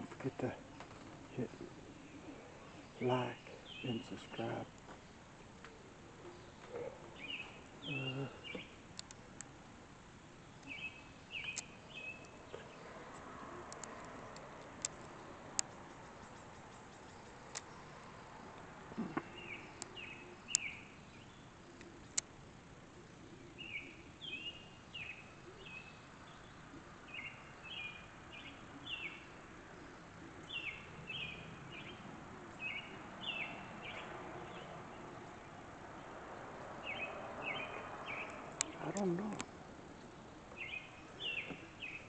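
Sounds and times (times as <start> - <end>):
faint outdoor background: 0.0 - 42.0
songbird high chirps: 1.4 - 4.8, 6.2 - 9.1, 10.5 - 22.2, 23.2 - 29.4, 30.4 - 42.0
sharp clicks: 21.8 - 22.3.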